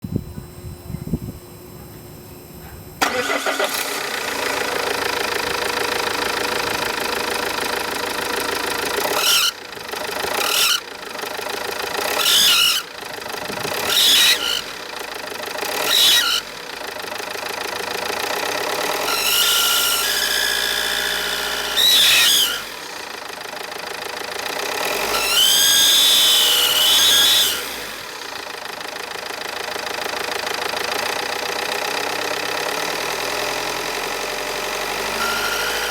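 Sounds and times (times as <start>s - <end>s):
diesel engine revving: 3.0s - 35.9s
high engine whistle: 9.1s - 9.7s, 19.0s - 22.9s, 35.1s - 35.9s.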